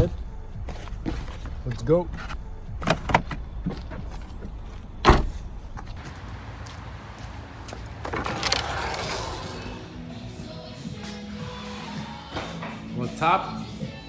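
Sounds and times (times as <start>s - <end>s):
low rumble of car: 0.0s - 10.6s
car door shutting: 2.2s - 5.9s.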